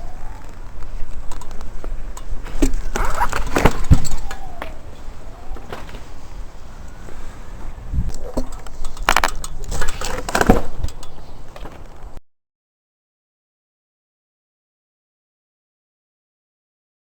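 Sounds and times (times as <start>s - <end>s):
wind rumble on microphone: 0.0s - 12.2s.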